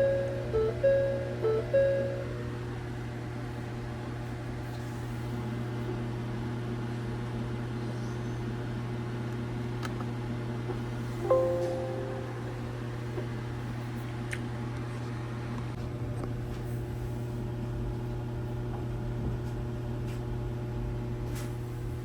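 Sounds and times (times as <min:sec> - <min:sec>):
fan humming with hiss: 0:07.9 - 0:14.6.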